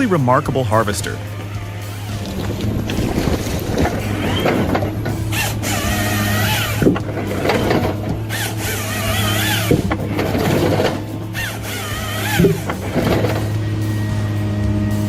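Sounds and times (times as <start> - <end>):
high hydraulic whine: 0.0 - 15.0
machine engine hum: 0.0 - 15.0
log clattering and knocks: 2.1 - 13.8.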